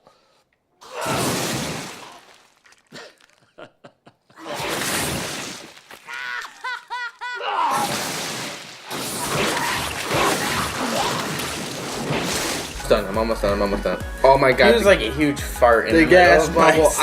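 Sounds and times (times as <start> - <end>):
soft gulps of drinking: 2.6 - 3.6.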